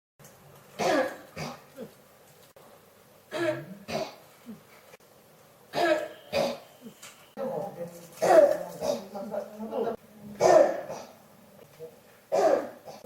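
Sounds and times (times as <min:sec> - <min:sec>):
person coughing: 0:00.8 - 0:01.9, 0:03.3 - 0:04.6, 0:05.7 - 0:06.7, 0:10.4 - 0:11.2, 0:12.3 - 0:13.0.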